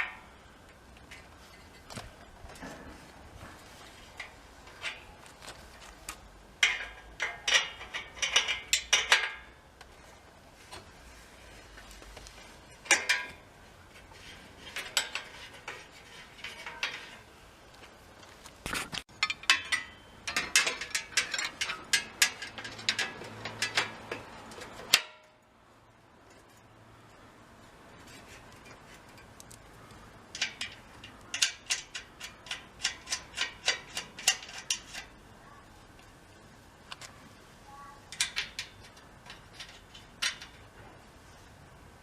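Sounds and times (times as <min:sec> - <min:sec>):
hand tools clinking on metal: 0:19.1 - 0:25.4.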